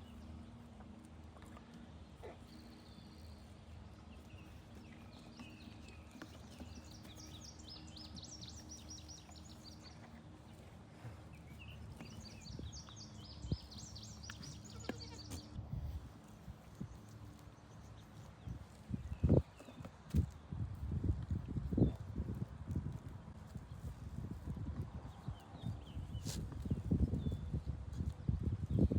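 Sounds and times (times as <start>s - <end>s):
songbird chirping: 0.0s - 15.6s.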